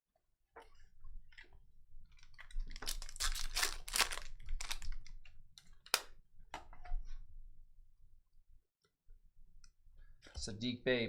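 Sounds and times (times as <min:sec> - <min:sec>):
foil wrappers crinkling and tearing: 0:02.2 - 0:05.2.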